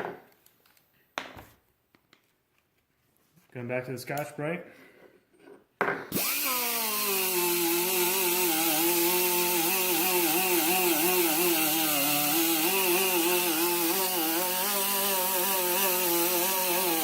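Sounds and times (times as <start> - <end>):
electric power tool running: 6.1 - 17.0.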